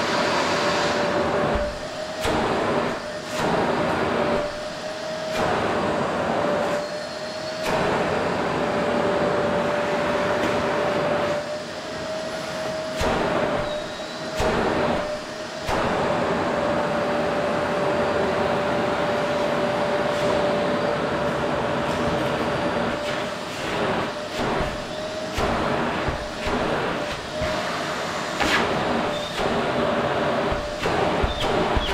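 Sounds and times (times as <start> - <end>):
vacuum cleaner running: 0.0 - 31.9.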